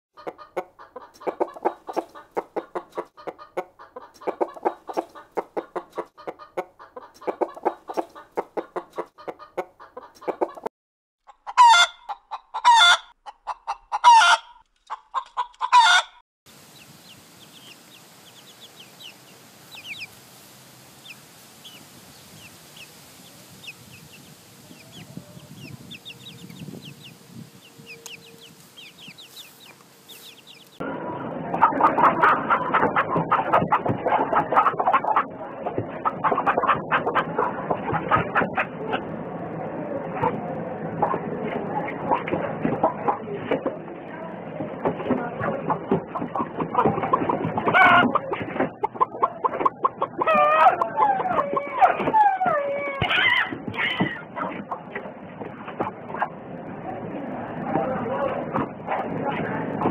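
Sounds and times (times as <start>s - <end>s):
chickens clucking: 0.2s - 20.2s, 20.8s - 59.9s
loud short chicken calls: 11.5s - 16.2s.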